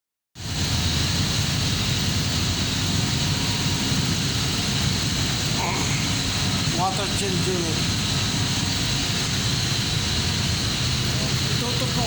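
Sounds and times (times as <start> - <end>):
chiller machinery rumble and whine: 0.4 - 12.0.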